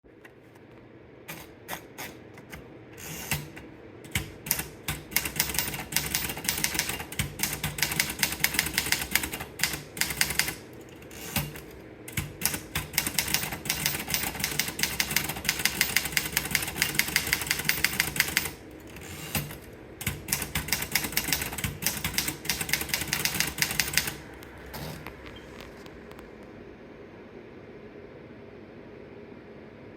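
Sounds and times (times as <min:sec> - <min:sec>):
typewriter key strikes: 0:04.1 - 0:10.6, 0:11.3 - 0:18.6, 0:19.3 - 0:24.2.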